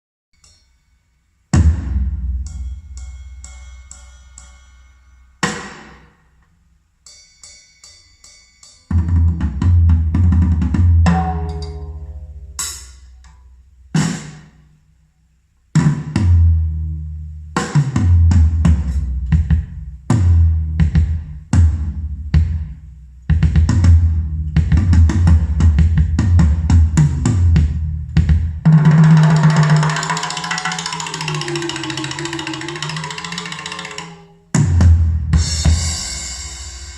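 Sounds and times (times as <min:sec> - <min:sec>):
snare and cymbal hits: 0:00.4 - 0:14.8, 0:15.8 - 0:16.6, 0:17.6 - 0:36.9
heavy bass drum: 0:01.6 - 0:03.7, 0:17.6 - 0:30.1, 0:34.6 - 0:36.9
ringing pitched notes: 0:02.3 - 0:05.8, 0:11.1 - 0:13.3.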